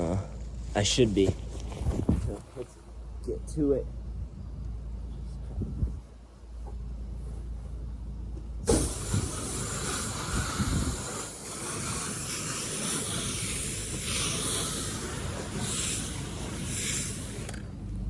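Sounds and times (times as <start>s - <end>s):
pressure washer spray hissing: 8.7s - 17.7s.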